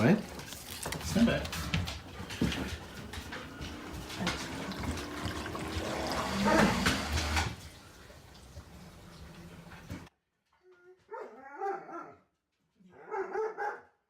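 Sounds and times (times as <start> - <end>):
water rushing in dishwasher: 0.0 - 10.1.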